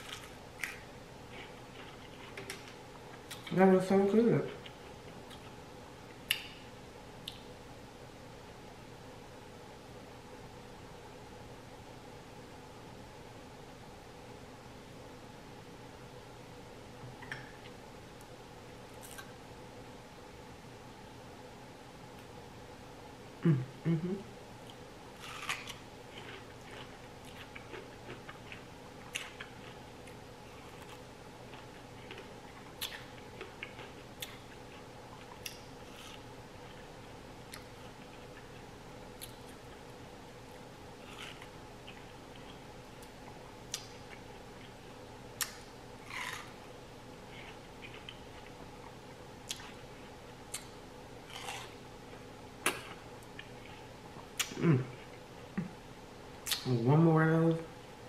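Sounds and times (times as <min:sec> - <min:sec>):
chewing food: 0:00.0 - 0:03.5, 0:24.7 - 0:39.8, 0:45.4 - 0:46.5, 0:47.3 - 0:51.8
faint steady hum: 0:00.0 - 0:58.0
wet mouth clicks and smacks: 0:54.4 - 0:54.6, 0:56.4 - 0:56.7.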